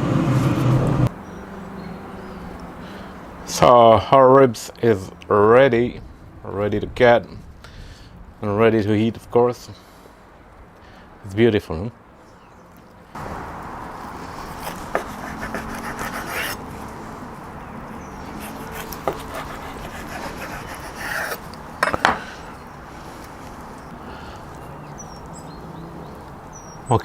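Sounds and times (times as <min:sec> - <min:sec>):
knife scraping through ribs: 0:14.0 - 0:16.7, 0:18.0 - 0:21.6.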